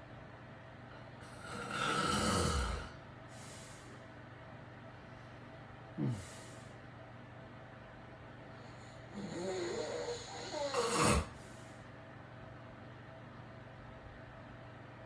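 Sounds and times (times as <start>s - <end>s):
man snoring: 1.2s - 3.0s, 6.0s - 6.3s, 9.1s - 11.4s
faint breath: 3.3s - 4.1s, 6.0s - 6.8s
short snort: 10.6s - 11.4s.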